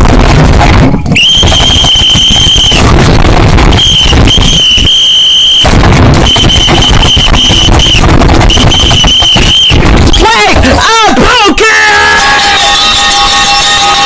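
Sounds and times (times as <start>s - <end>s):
harsh distorted noise: 0.0s - 14.0s
shrill high-pitched squeal: 1.2s - 3.0s, 3.7s - 10.6s, 11.9s - 14.0s.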